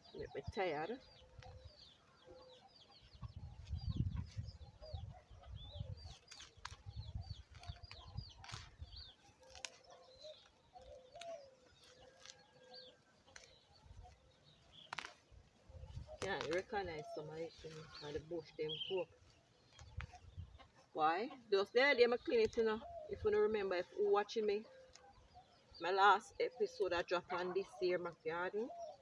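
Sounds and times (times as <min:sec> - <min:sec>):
chickens clucking: 0:01.3 - 0:08.7, 0:20.0 - 0:21.6.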